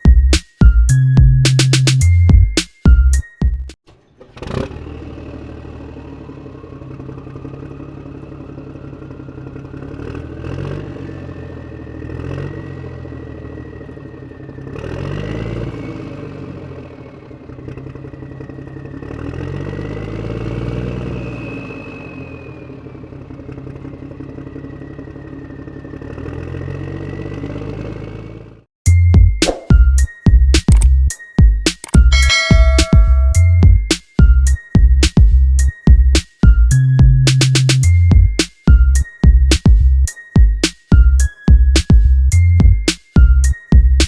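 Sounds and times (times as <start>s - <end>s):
tractor engine revving: 3.9s - 16.8s, 17.4s - 28.4s.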